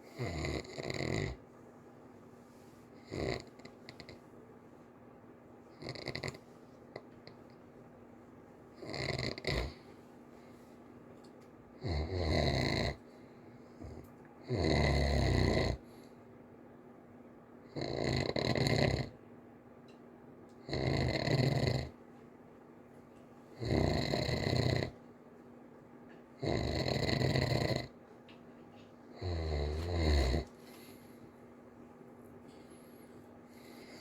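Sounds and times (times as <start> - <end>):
child snoring: 0.0 - 1.4, 3.0 - 4.2, 5.8 - 6.4, 8.8 - 9.8, 11.8 - 13.0, 13.8 - 15.8, 17.8 - 19.1, 20.7 - 22.0, 23.6 - 25.0, 26.4 - 27.9, 29.2 - 30.5.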